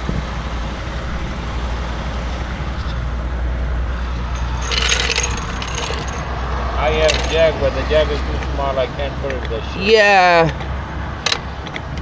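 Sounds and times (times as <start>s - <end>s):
highway traffic rumble: 0.0s - 12.0s
metal clatter: 4.3s - 6.4s, 7.0s - 7.6s.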